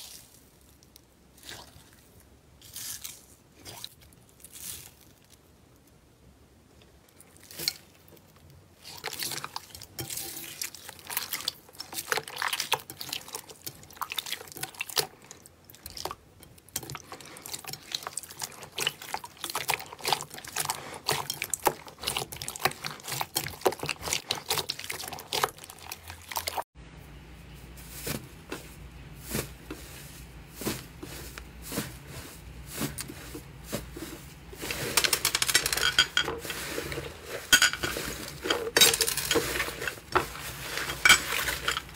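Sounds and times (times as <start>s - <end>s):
slime squishing and crackling: 0.0s - 5.9s, 7.1s - 26.7s.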